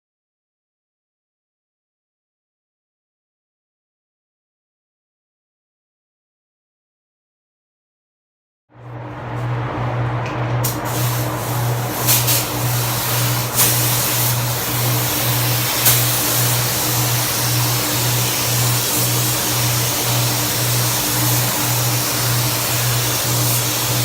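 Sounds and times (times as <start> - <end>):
loud steady hiss: 10.7 - 24.0.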